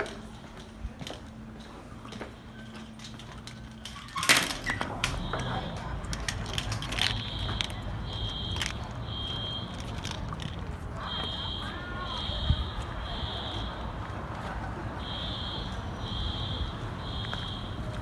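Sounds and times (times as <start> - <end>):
fire alarm beeping: 4.6 - 6.0, 7.0 - 9.8, 11.0 - 13.9, 15.0 - 18.0.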